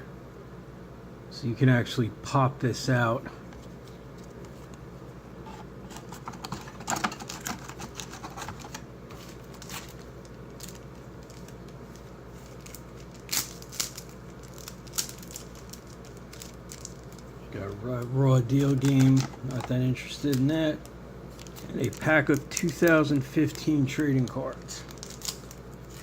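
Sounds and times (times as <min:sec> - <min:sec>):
packaging clicks and crinkles: 0:05.9 - 0:26.0.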